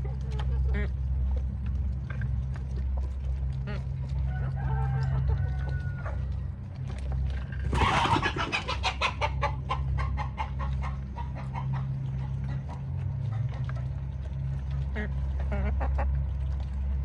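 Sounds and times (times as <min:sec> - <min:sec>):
chickens clucking: 0:07.5 - 0:14.0.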